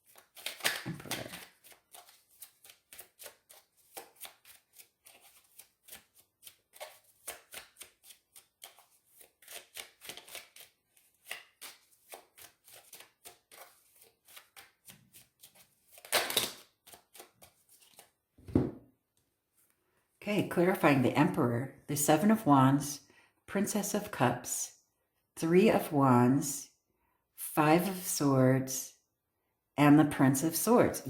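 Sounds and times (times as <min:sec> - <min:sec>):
cards rustling: 0:00.0 - 0:18.2
cards shuffling: 0:00.0 - 0:18.2
short thump: 0:18.4 - 0:18.8.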